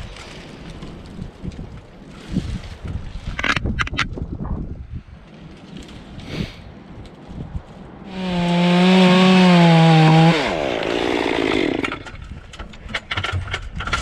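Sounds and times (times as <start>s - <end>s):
chainsaw engine revving: 8.1s - 12.1s
sharp clicks and knocks: 11.8s - 14.0s.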